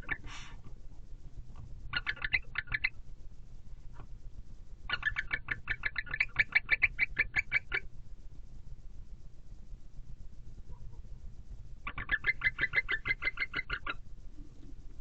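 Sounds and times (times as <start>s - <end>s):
barn owl chittering: 0.0s - 0.7s, 1.6s - 4.1s, 4.8s - 8.0s, 10.5s - 15.0s.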